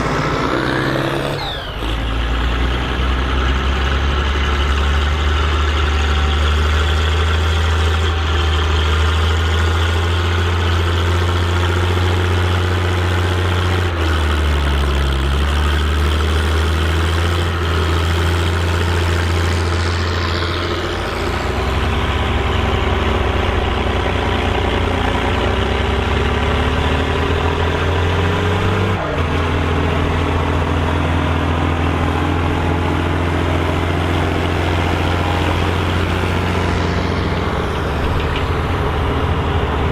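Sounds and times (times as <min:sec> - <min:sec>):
rising tone: 0:00.0 - 0:03.3, 0:18.6 - 0:23.3, 0:30.7 - 0:39.9
tractor diesel engine running: 0:00.0 - 0:39.9.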